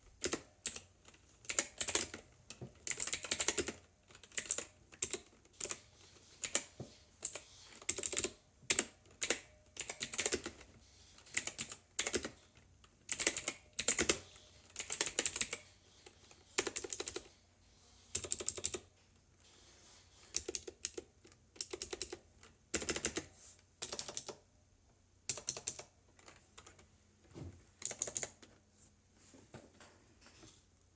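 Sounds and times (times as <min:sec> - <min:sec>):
mechanical keyboard typing: 0:00.2 - 0:05.8, 0:06.4 - 0:10.7, 0:11.3 - 0:12.4, 0:13.0 - 0:15.7, 0:16.6 - 0:17.3, 0:18.1 - 0:18.9, 0:20.3 - 0:24.4, 0:25.3 - 0:26.8, 0:27.8 - 0:28.4.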